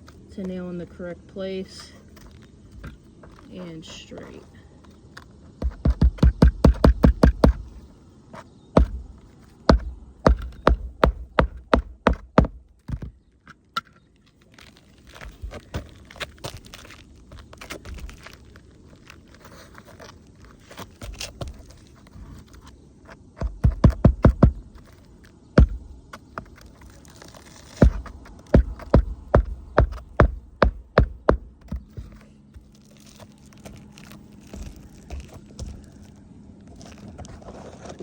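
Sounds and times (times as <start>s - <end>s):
shingle scraping and clicking: 1.7s - 38.0s
hammer striking roofing nails: 5.6s - 7.7s, 8.8s - 13.1s, 23.4s - 24.8s, 25.6s - 26.0s, 27.8s - 32.1s.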